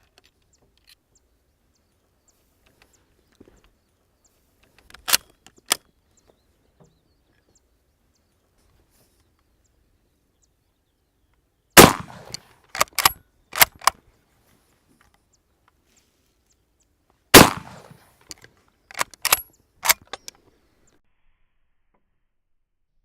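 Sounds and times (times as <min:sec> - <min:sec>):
rifle bolt metallic clacks: 0:04.6 - 0:05.9, 0:11.8 - 0:14.0, 0:17.4 - 0:20.4
rifle handling clicks: 0:04.6 - 0:05.9, 0:11.8 - 0:14.0, 0:17.4 - 0:20.4
rifle shot: 0:11.8 - 0:13.9, 0:17.3 - 0:18.1.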